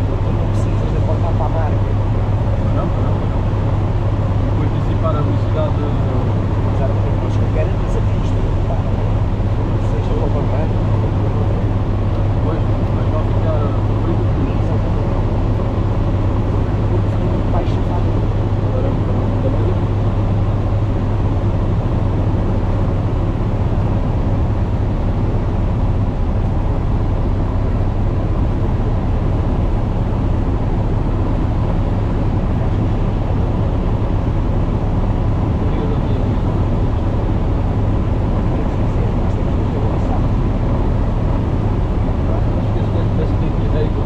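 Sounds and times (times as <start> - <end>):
light aircraft engine drone: 0.0 - 44.0.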